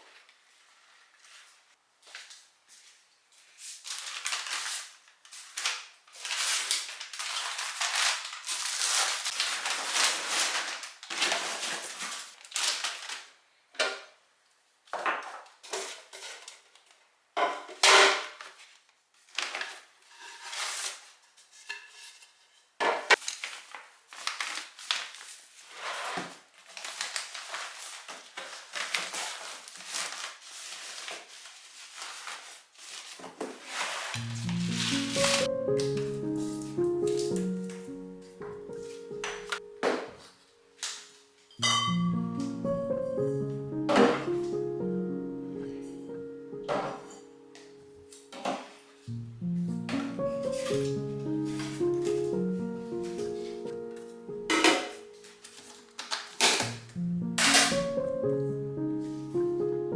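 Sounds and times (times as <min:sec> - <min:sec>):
dishes clattering: 0:41.5 - 0:42.1, 0:54.5 - 0:55.0.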